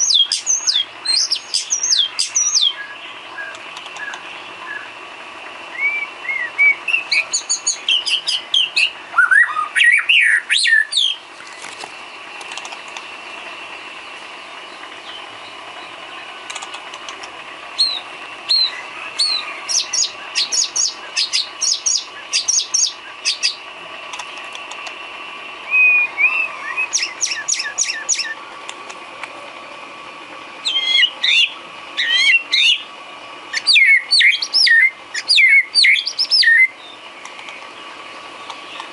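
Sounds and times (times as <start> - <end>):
bird singing whistles: 0.0 - 4.9, 5.7 - 11.2, 17.8 - 23.6, 25.7 - 28.4, 30.6 - 32.9, 33.5 - 37.0.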